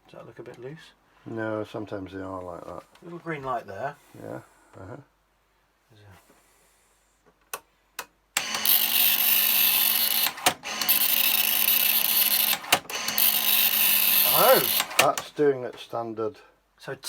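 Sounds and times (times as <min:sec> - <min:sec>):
small clicks: 0:07.5 - 0:15.4
printer buzzing rattle: 0:08.4 - 0:15.4.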